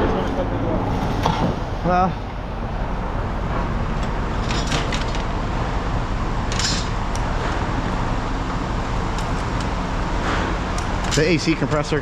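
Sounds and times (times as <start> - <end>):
diesel engine running: 0.0 - 11.1.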